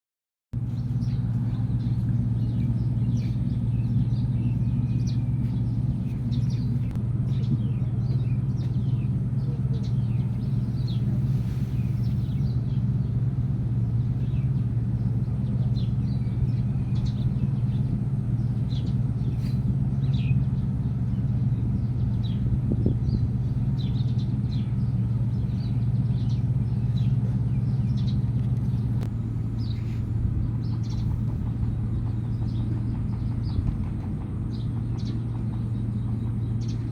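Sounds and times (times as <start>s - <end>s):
low rumble: 0.6s - 36.9s.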